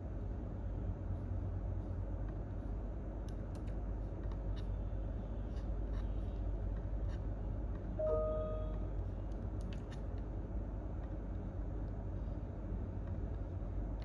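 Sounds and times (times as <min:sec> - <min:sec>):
low room hum: 0:00.0 - 0:14.0
brief steady tone: 0:08.0 - 0:08.9.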